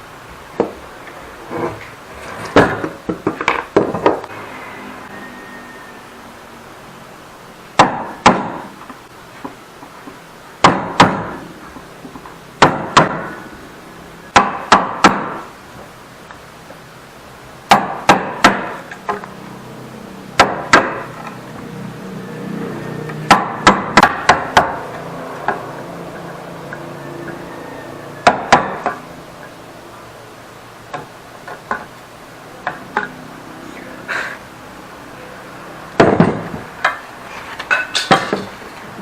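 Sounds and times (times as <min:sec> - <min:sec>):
chisel struck into wood: 0:07.8 - 0:08.7, 0:10.6 - 0:11.4, 0:12.6 - 0:13.4, 0:14.3 - 0:15.4, 0:17.7 - 0:19.2, 0:20.4 - 0:21.1, 0:23.3 - 0:24.8, 0:28.2 - 0:29.0.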